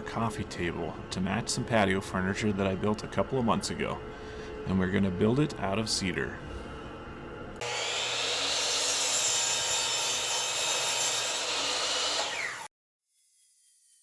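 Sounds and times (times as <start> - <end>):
power woodworking tool whining: 7.6 - 12.7.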